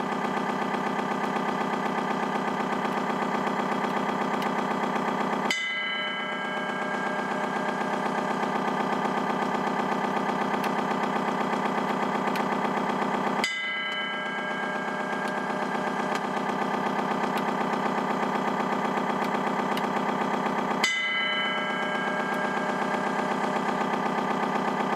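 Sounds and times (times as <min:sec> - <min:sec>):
simulated diesel engine from loudspeaker: 0:00.0 - 0:24.9
brief ringing tone: 0:05.5 - 0:08.7.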